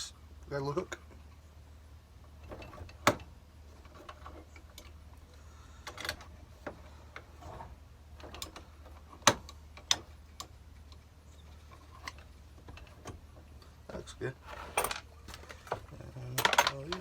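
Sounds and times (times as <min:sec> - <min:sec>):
low steady hum: 0:00.0 - 0:17.0
metal hardware clicking and tapping: 0:14.7 - 0:17.0.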